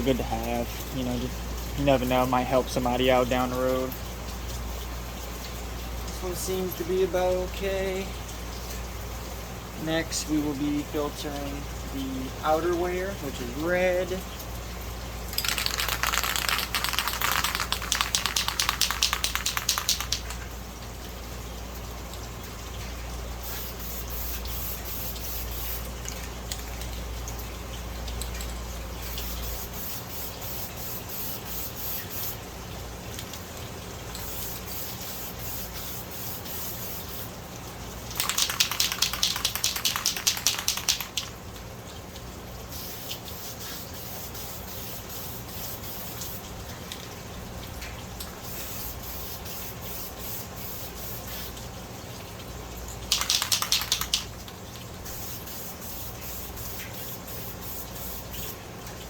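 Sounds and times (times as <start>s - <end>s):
pulsing spray bursts: 15.3s - 20.4s, 23.4s - 26.0s, 29.0s - 32.4s, 34.2s - 37.4s, 38.1s - 41.4s, 42.7s - 46.5s, 48.4s - 51.6s, 53.1s - 54.3s, 55.0s - 58.6s.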